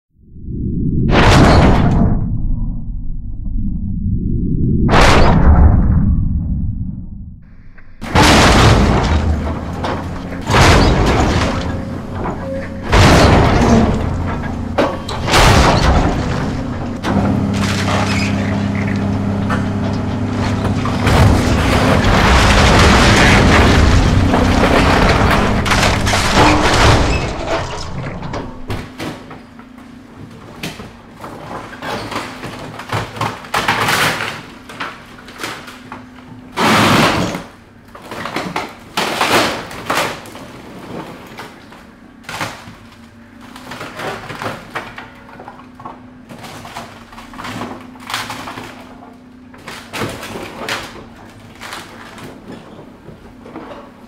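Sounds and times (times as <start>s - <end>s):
cracks and creaks of breaking material: 7.4s - 54.0s
rumbling collapse of debris: 7.4s - 54.0s
excavator engine running: 7.5s - 28.8s.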